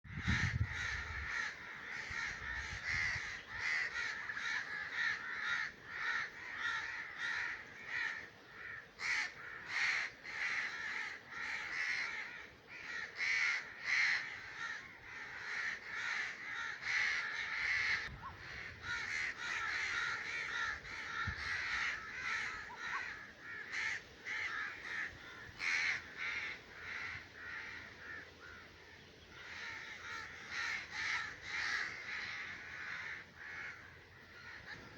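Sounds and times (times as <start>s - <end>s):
crows cawing: 0.1s - 34.9s.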